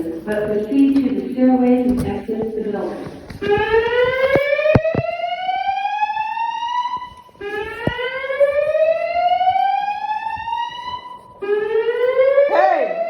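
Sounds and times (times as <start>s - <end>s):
fire alarm whoop tone: 3.4s - 13.0s.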